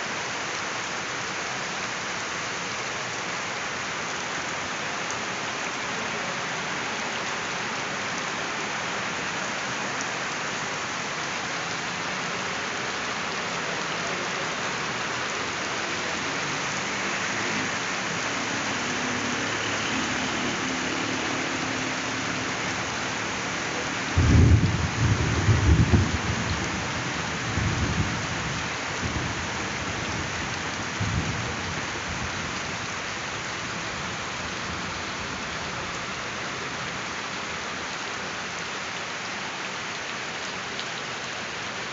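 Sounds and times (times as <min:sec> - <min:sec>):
heavy rain hiss: 0:00.0 - 0:41.9
thunderclap and rumbles: 0:24.2 - 0:26.6.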